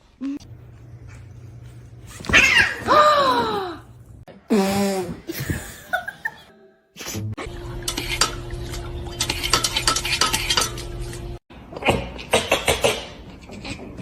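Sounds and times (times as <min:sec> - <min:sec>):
utensils clinking on dishes: 0:07.5 - 0:11.2.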